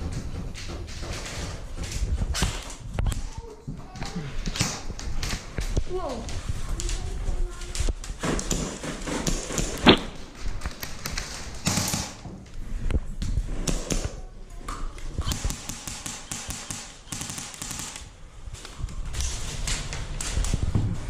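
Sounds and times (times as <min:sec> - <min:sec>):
taps clicks and thuds: 0:00.0 - 0:05.9.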